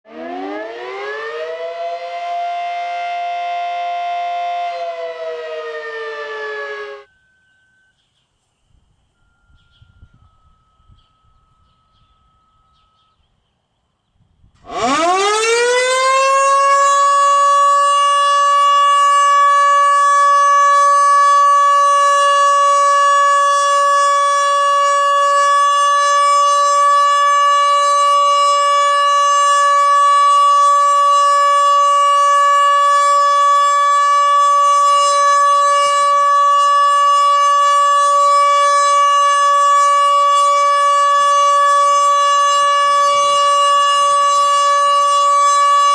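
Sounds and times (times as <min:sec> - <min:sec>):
tornado warning siren: 0:00.0 - 0:08.1, 0:09.2 - 0:13.2, 0:14.6 - 0:45.9.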